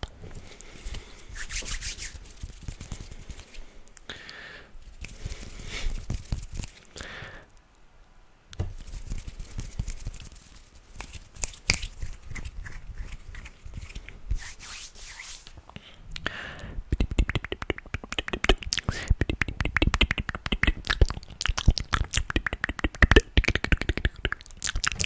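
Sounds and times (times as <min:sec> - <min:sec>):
wet mouth clicks and smacks: 0:10.9 - 0:13.8, 0:16.9 - 0:25.0.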